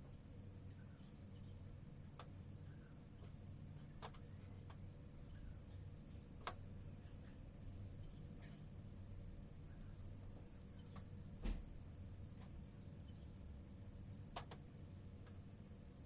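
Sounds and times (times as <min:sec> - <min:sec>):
low steady hum: 0:00.0 - 0:16.0
faint bird chirps: 0:00.1 - 0:14.3
sharp clicks: 0:04.0 - 0:04.8, 0:14.3 - 0:15.4.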